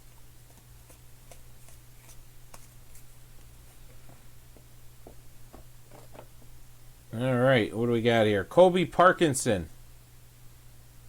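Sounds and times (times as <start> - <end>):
steady low hum: 0.0 - 11.0
trading cards being shuffled: 0.4 - 4.0.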